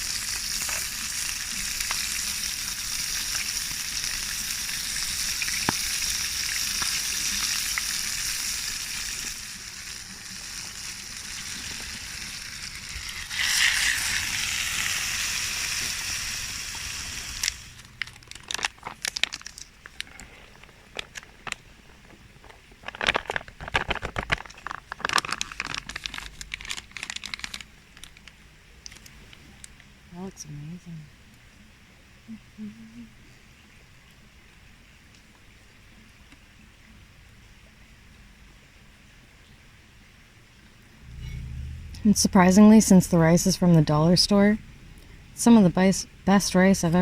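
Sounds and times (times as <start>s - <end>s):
food sizzling: 0.0s - 19.6s, 41.0s - 47.0s
clicks and crinkling: 17.4s - 29.9s.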